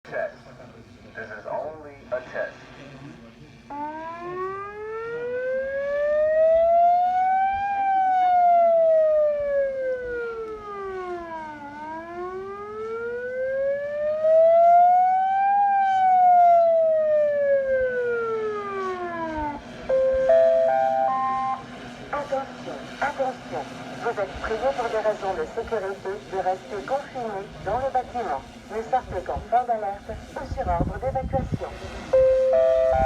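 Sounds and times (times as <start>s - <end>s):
alarm siren wailing: 3.7s - 25.6s, 31.8s - 33.0s
steady low hum: 16.6s - 33.0s.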